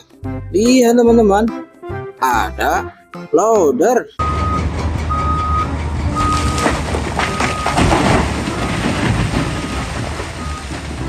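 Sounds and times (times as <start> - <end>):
reversing alarm beeping: 4.2 - 7.9, 10.4 - 10.8
loader engine rumble: 4.2 - 11.0
rushing clattering noise: 4.2 - 11.0.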